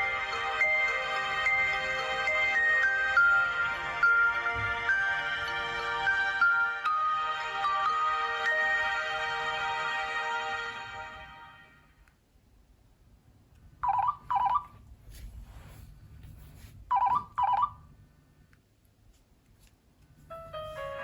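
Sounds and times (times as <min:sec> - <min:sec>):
phone ringtone double ring: 0:13.8 - 0:14.7, 0:16.9 - 0:17.8.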